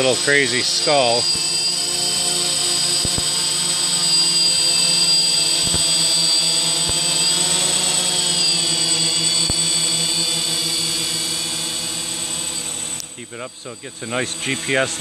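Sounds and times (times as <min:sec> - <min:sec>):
quadcopter rotors whining: 0:00.0 - 0:15.0.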